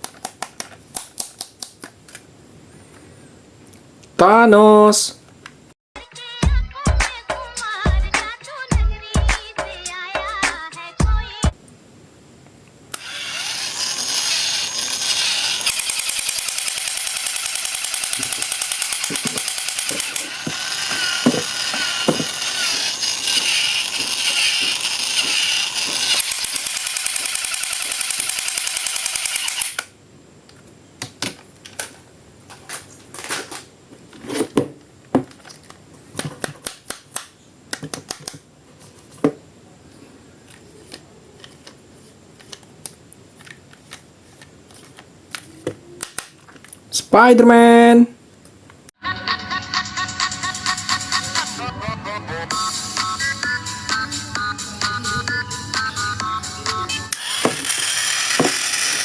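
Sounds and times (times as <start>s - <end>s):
loud drill-like buzzing: 13.0s - 29.9s, 57.1s - 59.0s.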